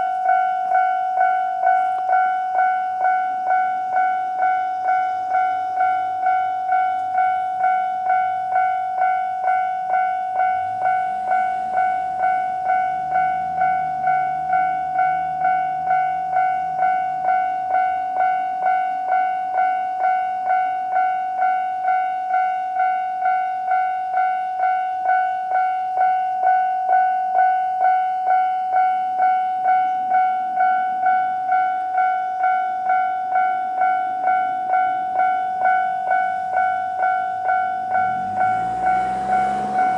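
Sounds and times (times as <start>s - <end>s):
diesel railcar engine revving: 0.0s - 18.4s, 33.7s - 39.9s
level-crossing bell ringing: 0.0s - 39.9s.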